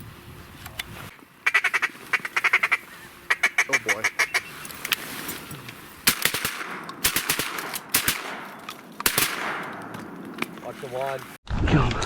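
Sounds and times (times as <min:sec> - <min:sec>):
shotgun shots echoing: 0:06.1 - 0:10.2.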